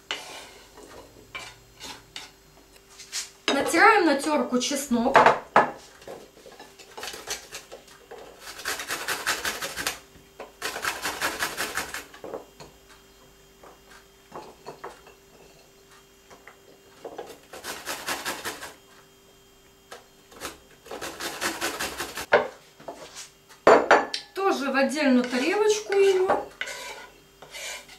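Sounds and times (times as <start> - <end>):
garlic rasping on grater: 8.4 - 10.0, 17.5 - 18.8, 20.4 - 22.3.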